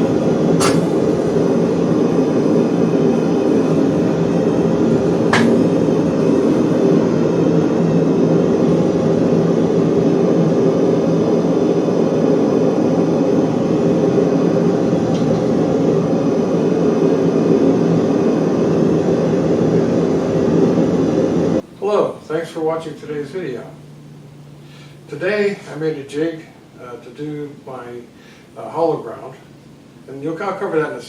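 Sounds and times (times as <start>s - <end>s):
workshop machinery running: 0.0s - 28.5s
sharp click: 0.6s - 1.1s.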